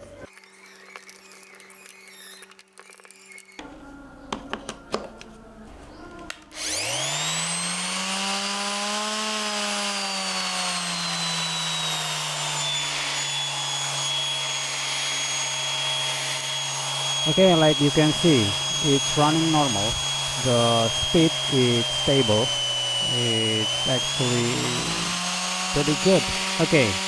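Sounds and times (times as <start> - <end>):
orbital sander motor whining: 6.6 - 27.0.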